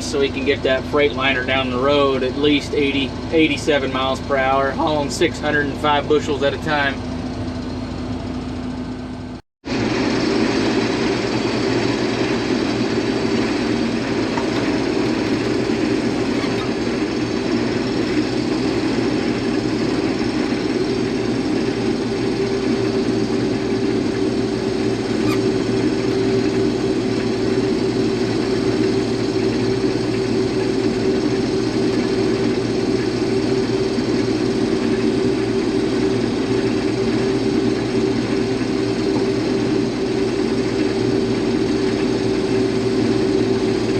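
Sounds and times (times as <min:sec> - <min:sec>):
diesel engine running steadily: 0:00.0 - 0:43.9.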